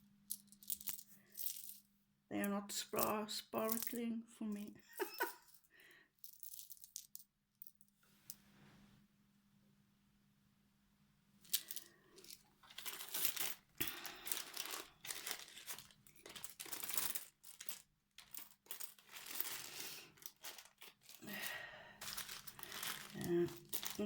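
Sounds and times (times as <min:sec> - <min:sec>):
plastic packaging crinkling: 0:12.6 - 0:24.0.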